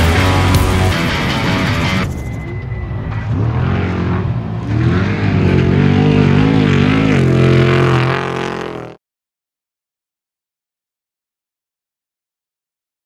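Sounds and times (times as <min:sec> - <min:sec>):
race vehicle engine revving: 0:00.0 - 0:09.0.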